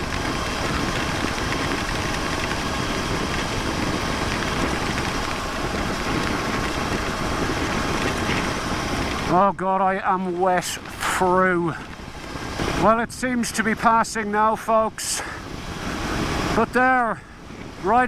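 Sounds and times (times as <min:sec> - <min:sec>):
motorcycle engine running: 0:00.0 - 0:09.5
wind rush and road noise: 0:00.0 - 0:18.0.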